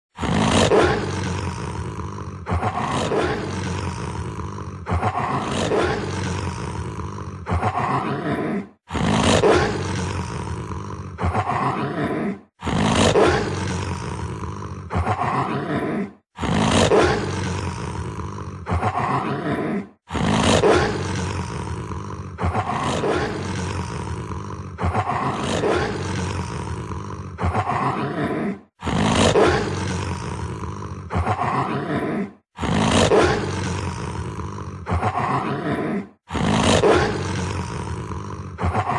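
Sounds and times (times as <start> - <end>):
large animal roaring: 0.1 - 38.9.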